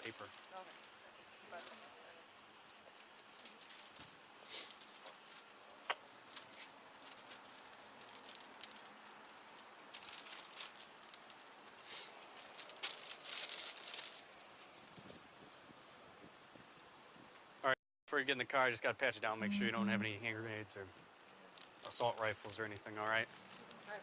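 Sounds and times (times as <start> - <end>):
rustling and crinkling material: 0.0 - 2.0, 2.9 - 15.7, 21.5 - 24.0.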